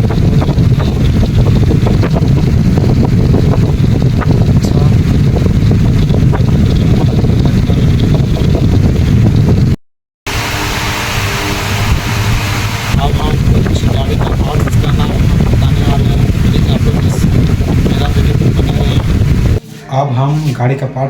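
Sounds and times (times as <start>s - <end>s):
fan air buffeting microphone: 0.0s - 21.0s.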